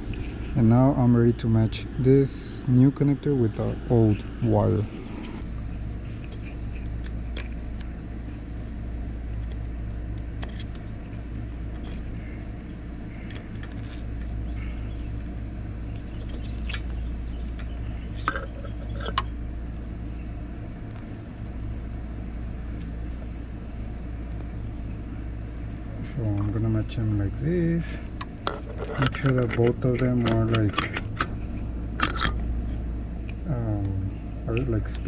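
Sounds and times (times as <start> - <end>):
low background rumble: 0.0 - 35.0
wires and connector clicking: 28.1 - 31.4.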